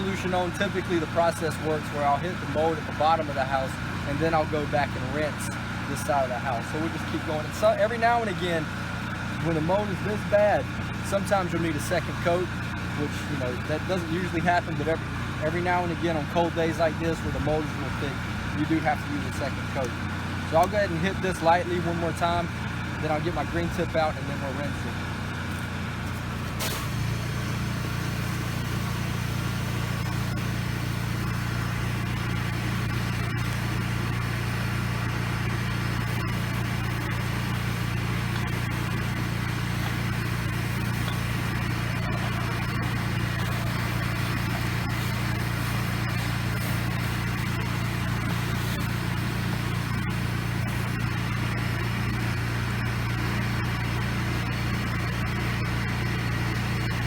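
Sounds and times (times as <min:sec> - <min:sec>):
pressure washer engine droning: 0:00.0 - 0:57.0.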